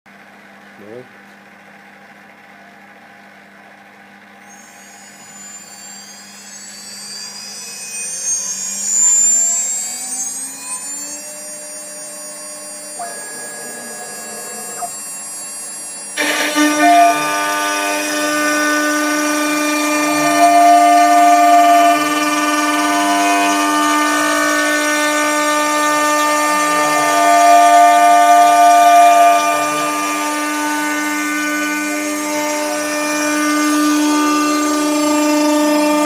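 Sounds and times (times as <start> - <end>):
router spindle whine: 4.2 - 36.0
short motor buzz: 4.4 - 36.0
router bit cutting plywood: 4.5 - 36.0.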